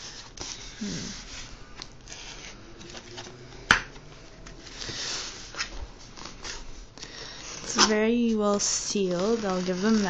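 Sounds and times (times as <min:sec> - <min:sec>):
packaging rustling and scraping: 0:00.0 - 0:03.6, 0:04.2 - 0:10.0
scissors cutting parcel packaging: 0:07.5 - 0:10.0.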